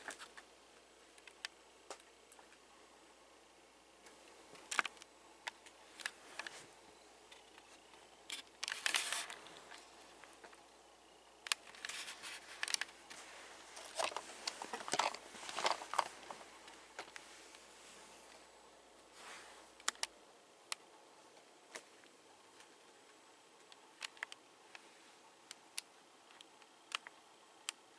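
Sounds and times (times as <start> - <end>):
scraping and rustling: 5.8 - 10.6, 11.6 - 18.4.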